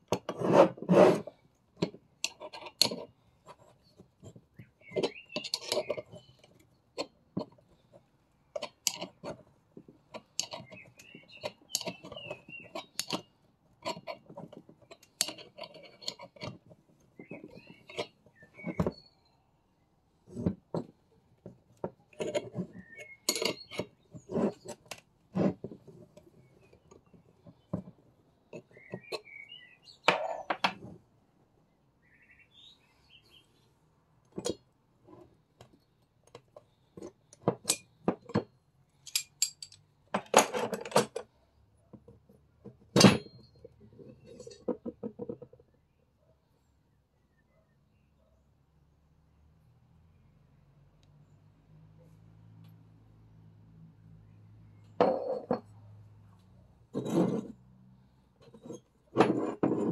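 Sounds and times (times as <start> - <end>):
birds chirping: 3.8 - 6.6, 10.3 - 13.1, 17.1 - 19.9, 22.6 - 24.8, 26.3 - 30.7, 31.7 - 33.8
metal tools clinking: 22.1 - 23.9, 39.0 - 41.2, 43.0 - 43.7.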